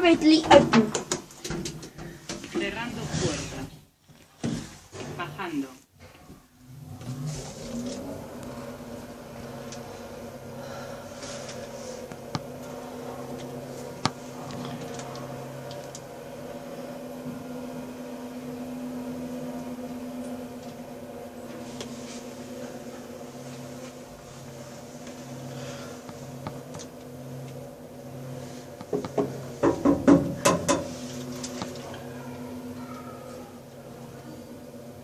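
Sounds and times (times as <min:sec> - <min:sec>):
lift drive humming: 0:04.9 - 0:35.0.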